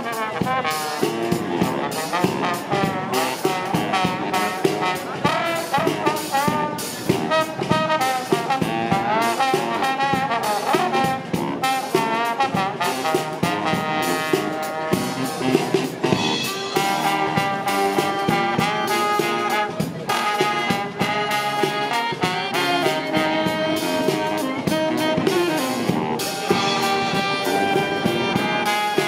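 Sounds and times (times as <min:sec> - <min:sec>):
steady drumbeat: 0:00.0 - 0:29.0
trombones and trumpets playing: 0:00.0 - 0:29.0.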